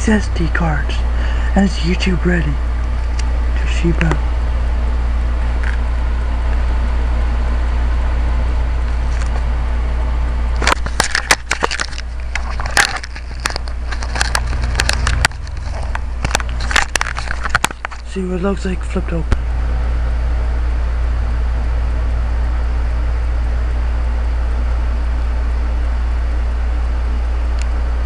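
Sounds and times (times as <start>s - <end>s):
steady low hum: 0.0s - 28.0s
plastic packaging clicks and crackles: 10.6s - 18.1s.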